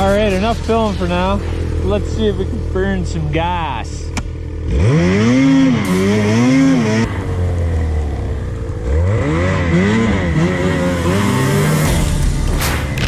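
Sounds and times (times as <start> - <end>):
snowmobile engine revving: 0.0 - 13.0.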